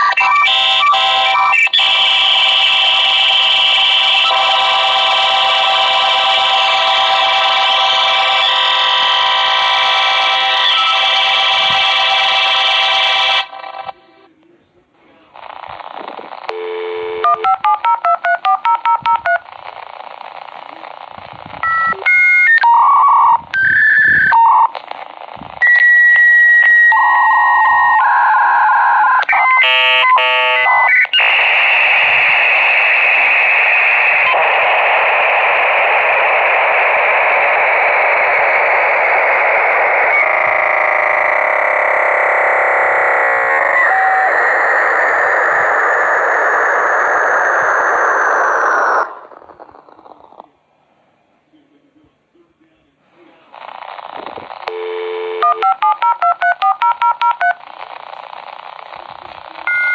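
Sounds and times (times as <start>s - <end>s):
modem data hiss: 15.2s - 50.6s, 53.4s - 59.9s
touch-tone dialing beeps: 17.2s - 19.4s, 54.7s - 57.6s, 59.6s - 59.9s.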